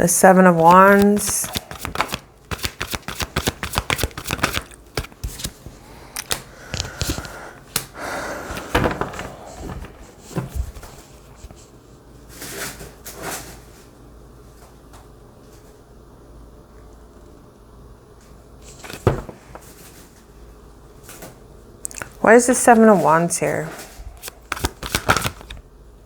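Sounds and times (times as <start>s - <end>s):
cards riffle shuffling: 0.4s - 7.9s, 24.2s - 25.6s
card slaps and rustles: 0.6s - 11.6s, 18.6s - 19.8s, 24.2s - 25.6s.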